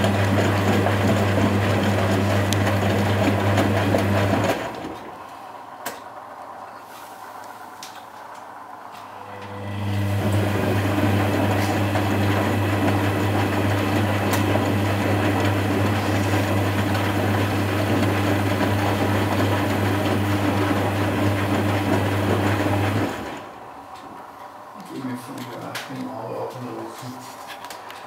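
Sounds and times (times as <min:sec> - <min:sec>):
washing machine humming: 0:00.0 - 0:28.0.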